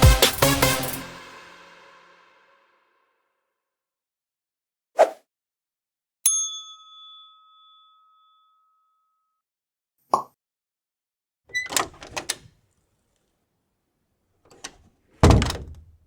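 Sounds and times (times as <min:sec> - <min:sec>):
bell ding: 0:06.3 - 0:09.1.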